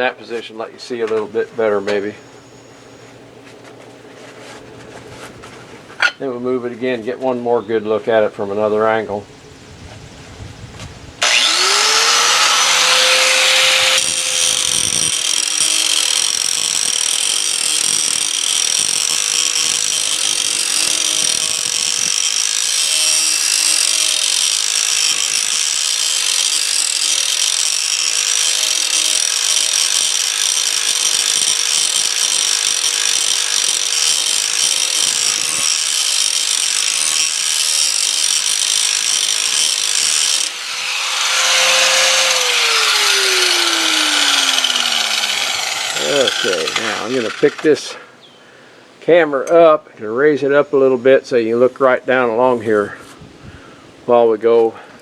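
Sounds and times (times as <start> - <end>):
electric grinder grinding steel: 11.2 - 47.9.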